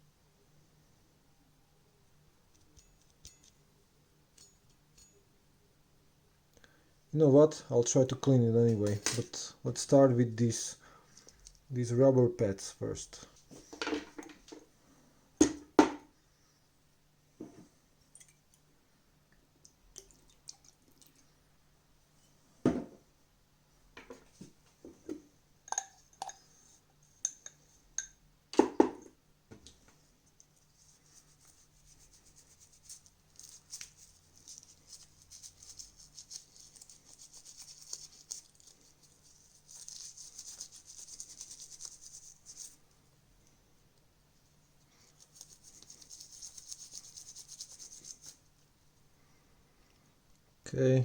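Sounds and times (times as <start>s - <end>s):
scratchy scrubbing: 30.7s - 42.8s, 45.1s - 48.4s.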